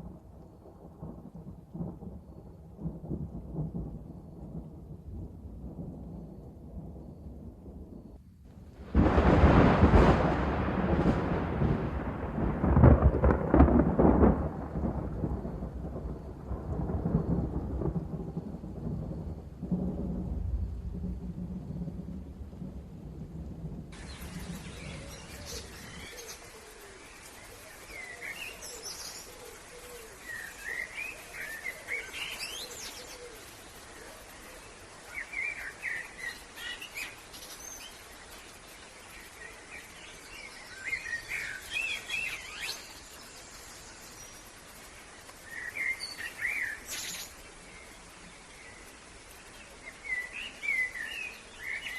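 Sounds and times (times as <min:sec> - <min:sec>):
thunder rumbling: 0:00.0 - 0:46.9
birds chirping and singing: 0:24.0 - 0:44.4, 0:45.0 - 0:51.9.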